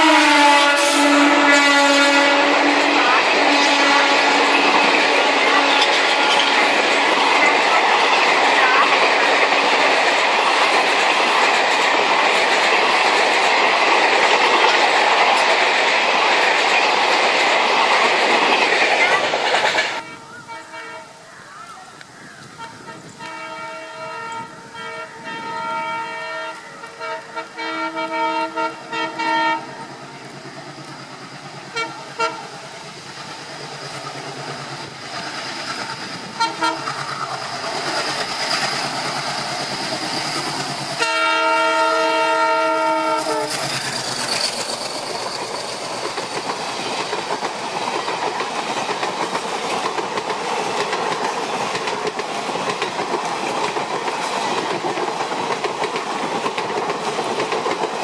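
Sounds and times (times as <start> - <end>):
train horn blasts: 0.0 - 6.9, 20.0 - 21.2, 22.6 - 29.8, 31.7 - 32.5, 36.4 - 37.0, 41.0 - 43.6
train rumble and wheel clatter: 0.0 - 58.0.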